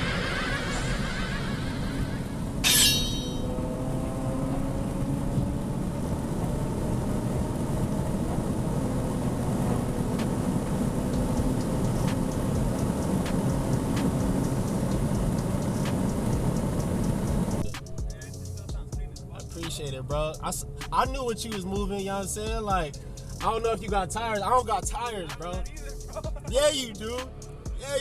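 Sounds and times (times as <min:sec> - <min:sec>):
car engine drone: 0:00.0 - 0:28.0
wind and road rumble: 0:00.0 - 0:28.0
sharp ticks: 0:10.2 - 0:18.6.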